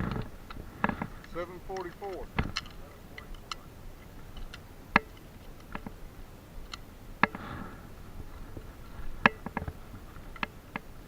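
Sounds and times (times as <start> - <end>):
sharp cracks: 0.0 - 6.0.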